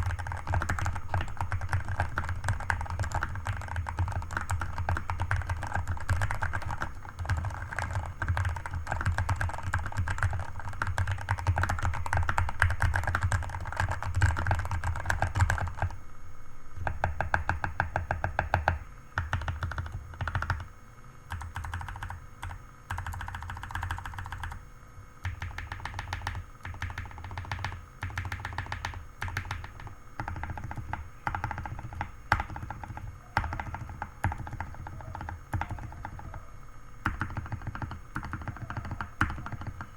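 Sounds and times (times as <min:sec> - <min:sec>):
mechanical keyboard typing: 0:00.0 - 0:16.0, 0:16.8 - 0:20.7, 0:21.3 - 0:24.6, 0:25.2 - 0:39.9.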